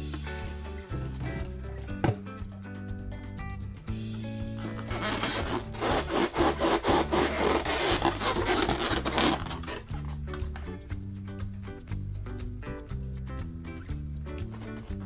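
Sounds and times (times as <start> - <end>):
music with steady beat: 0.0 - 15.0
hands rubbing a balloon: 0.9 - 2.4, 4.6 - 11.0, 14.4 - 15.0.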